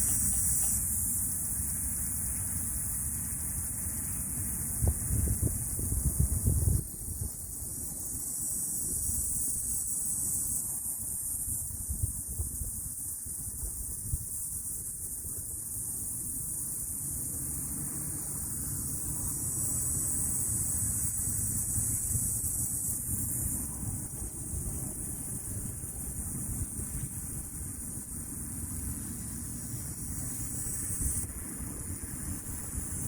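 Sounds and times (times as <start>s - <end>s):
cicadas buzzing: 0.0s - 33.0s.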